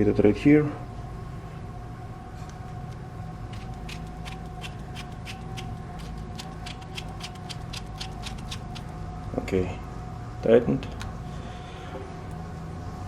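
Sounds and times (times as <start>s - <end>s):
electrical hum: 0.0s - 13.0s
screwdriver clicking: 3.5s - 8.9s.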